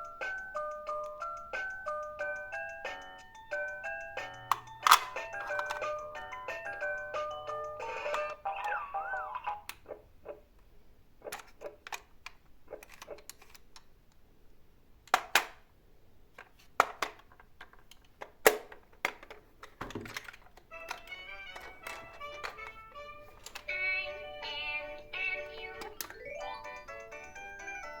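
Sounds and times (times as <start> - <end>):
music: 0.0 - 9.6, 20.7 - 28.0
toy cars clicking and clattering: 4.4 - 6.0, 16.4 - 22.8, 23.4 - 23.9.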